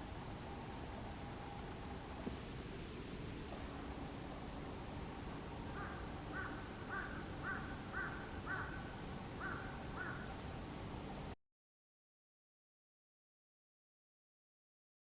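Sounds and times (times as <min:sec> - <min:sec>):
outdoor background noise: 0:00.0 - 0:11.4
bird calling: 0:05.3 - 0:10.5.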